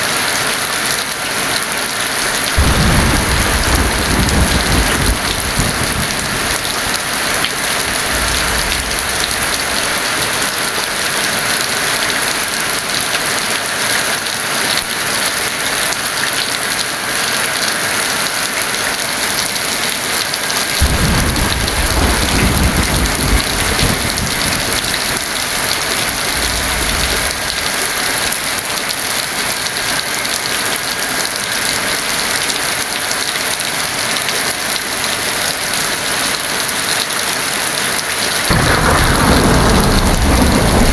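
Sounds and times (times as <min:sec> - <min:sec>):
heavy rain falling: 0:00.0 - 0:40.9
thunder rumbling: 0:02.6 - 0:11.6, 0:20.8 - 0:28.6, 0:38.5 - 0:40.9.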